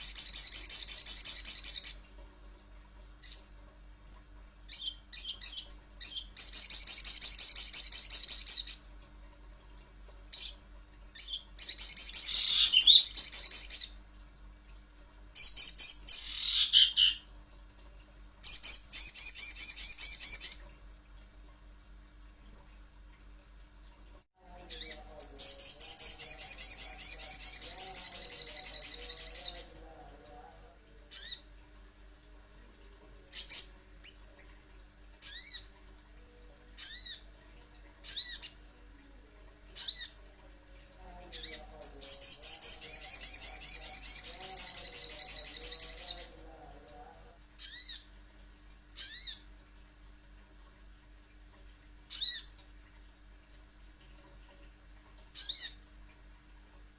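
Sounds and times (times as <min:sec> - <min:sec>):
bird high trills: 0:16.1 - 0:17.2.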